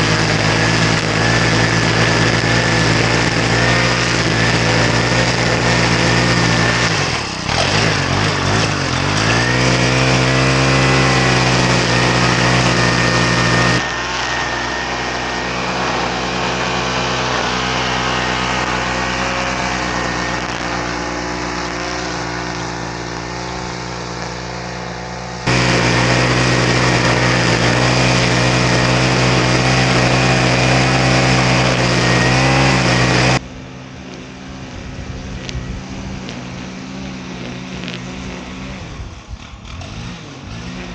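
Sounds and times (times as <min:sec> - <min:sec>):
small gasoline engine at full throttle: 0:00.0 - 0:40.9.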